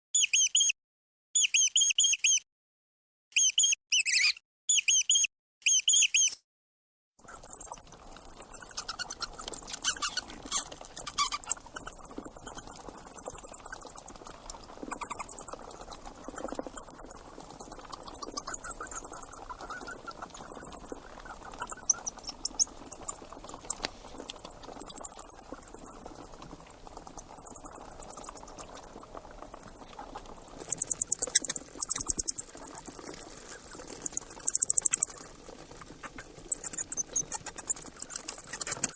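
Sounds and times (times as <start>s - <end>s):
very high chirps: 3.3s - 6.4s
mice squeaking: 3.4s - 6.4s, 7.3s - 38.9s
steady hiss: 7.3s - 37.4s.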